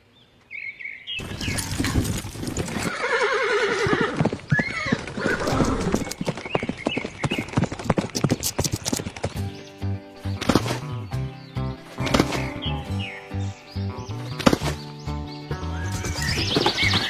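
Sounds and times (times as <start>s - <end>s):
hooves clip-clopping: 1.2s - 15.1s, 15.9s - 17.0s
horse whinnying: 1.6s - 6.2s.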